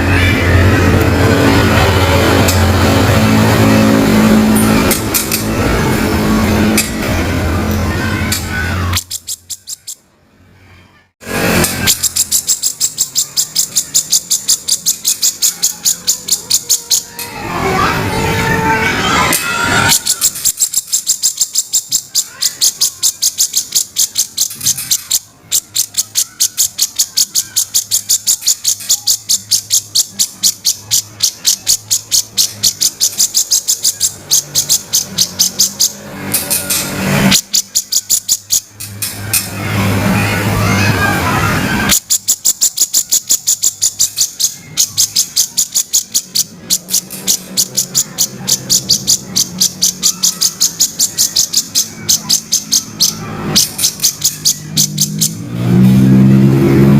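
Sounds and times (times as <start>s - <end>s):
bulbul harsh scratchy call: 11.2s - 56.7s.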